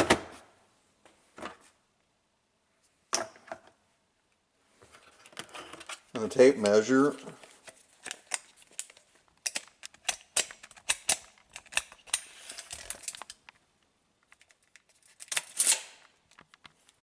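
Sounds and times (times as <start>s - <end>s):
hand tools clicking and rattling: 8.1s - 13.5s.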